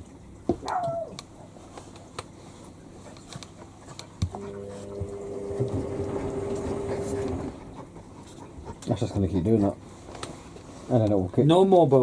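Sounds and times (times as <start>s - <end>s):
washing machine motor whine: 4.2s - 8.0s.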